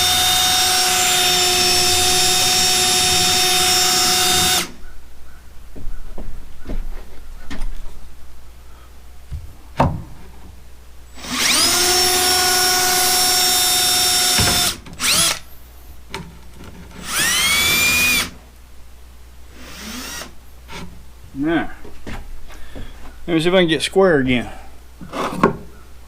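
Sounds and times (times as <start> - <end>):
power drill boring: 0.0 - 4.8, 11.2 - 15.4, 17.0 - 18.3, 19.6 - 20.4.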